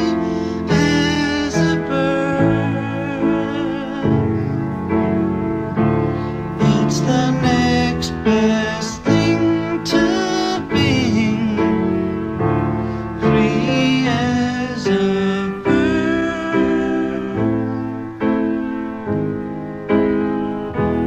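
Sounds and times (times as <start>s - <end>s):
man singing: 0.0s - 18.2s
piano playing slow chords: 0.0s - 21.0s.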